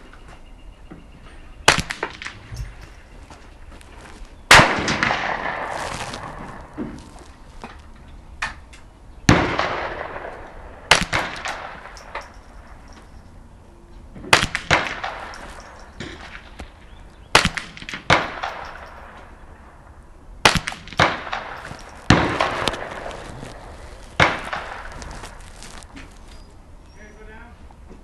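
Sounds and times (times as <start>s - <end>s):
rifle shots with ringing tail: 1.6s - 3.2s, 4.5s - 5.8s, 9.3s - 13.0s, 17.3s - 19.8s.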